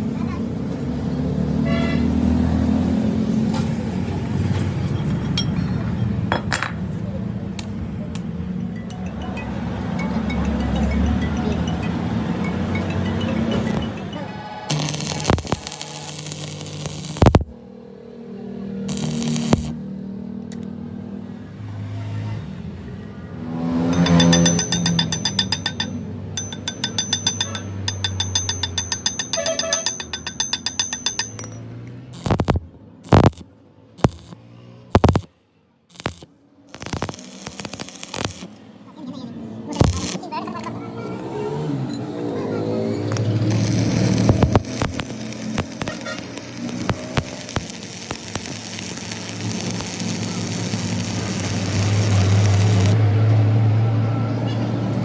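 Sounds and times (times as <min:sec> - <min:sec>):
brief high tone: 0:08.8 - 0:15.3
rapid metallic ringing ticks: 0:23.9 - 0:33.4, 0:43.1 - 0:53.0
sharp clicks: 0:32.2 - 0:33.4, 0:34.0 - 0:34.4, 0:35.0 - 0:35.3, 0:35.9 - 0:38.5, 0:43.1 - 0:53.0.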